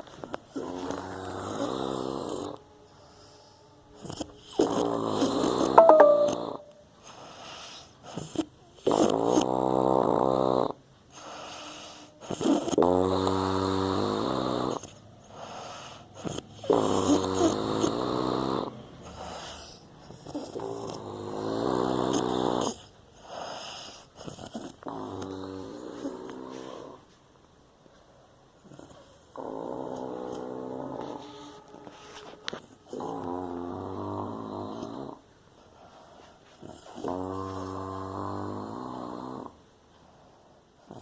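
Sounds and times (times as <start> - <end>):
soft breaths: 0.0 - 4.6, 11.0 - 12.7, 14.8 - 16.7, 22.2 - 29.4, 30.2 - 32.9, 34.8 - 38.2, 39.5 - 41.0
person snoring loudly: 0.6 - 2.6, 12.3 - 14.9, 16.6 - 22.8, 32.9 - 35.2, 36.8 - 39.6.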